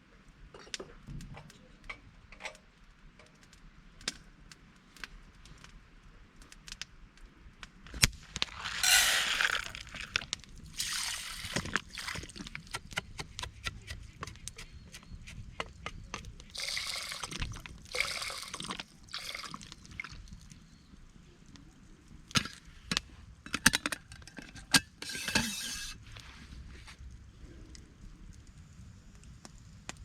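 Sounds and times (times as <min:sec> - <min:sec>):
small drips: 0:08.4 - 0:12.5, 0:16.4 - 0:21.7
liquid pouring and splashing: 0:08.5 - 0:12.6, 0:16.5 - 0:20.4.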